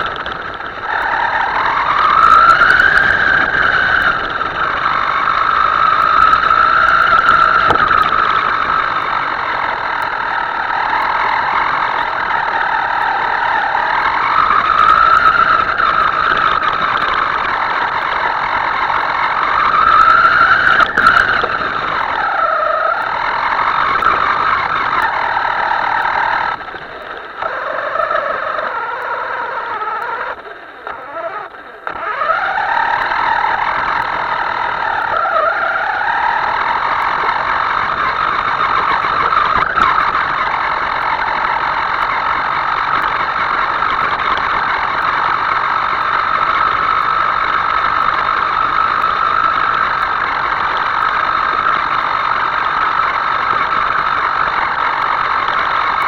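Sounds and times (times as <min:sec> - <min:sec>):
small electric motor whining: 0:00.0 - 0:56.0.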